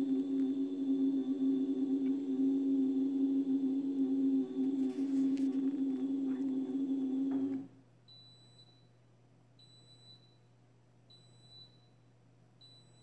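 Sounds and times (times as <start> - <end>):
dishwasher humming: 0.0 - 7.7.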